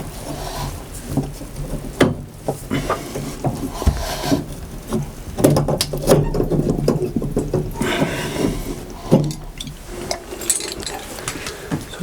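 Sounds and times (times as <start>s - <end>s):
rubbing and scraping: 0.0s - 11.8s
sharp knocks and clicks: 3.4s - 11.4s.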